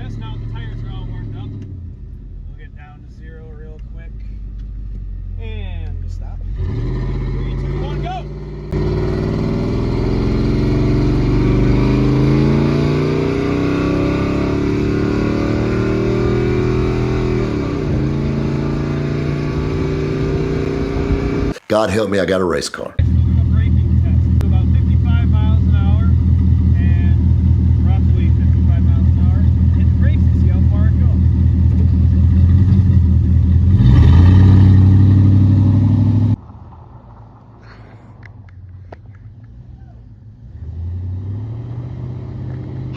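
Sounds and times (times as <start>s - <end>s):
truck engine revving under throttle: 0.0s - 1.7s, 6.3s - 21.6s, 23.0s - 36.4s, 40.3s - 42.9s
road and wind noise: 0.0s - 21.6s, 25.3s - 42.9s.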